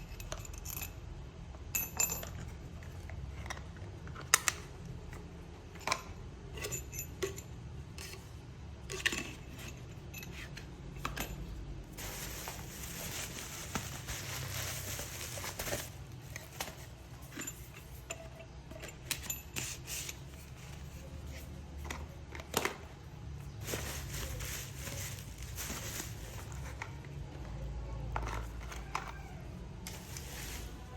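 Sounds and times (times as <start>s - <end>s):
rustling: 11.9s - 18.0s, 23.5s - 26.8s, 29.8s - 30.9s.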